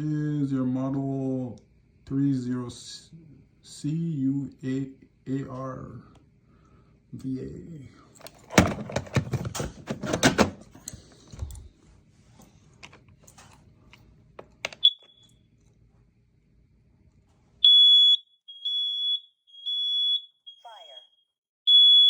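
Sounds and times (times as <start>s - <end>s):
high-pitched alarm beeps: 17.6s - 22.0s.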